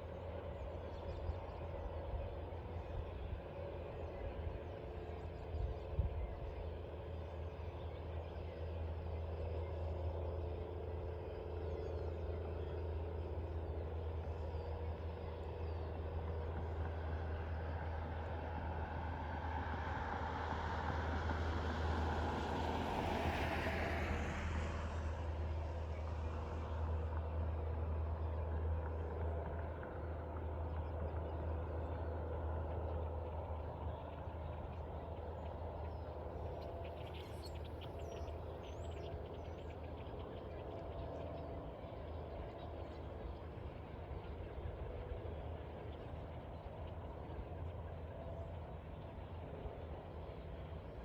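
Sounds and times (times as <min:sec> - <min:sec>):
steady low hum: 0:00.0 - 0:51.0
road vehicle passing: 0:18.7 - 0:27.4.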